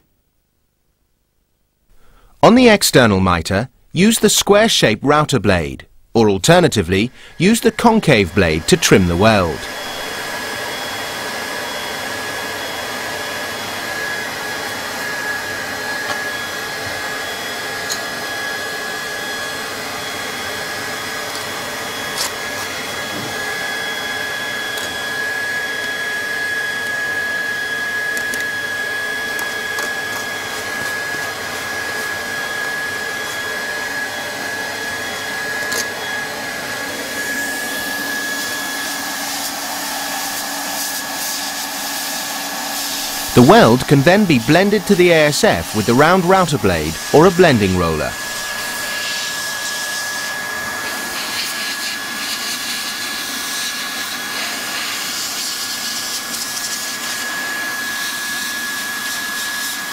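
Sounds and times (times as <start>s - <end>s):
hot-air welding gun blowing: 8.5s - 18.2s, 20.2s - 36.0s, 37.1s - 45.0s, 48.1s - 57.2s.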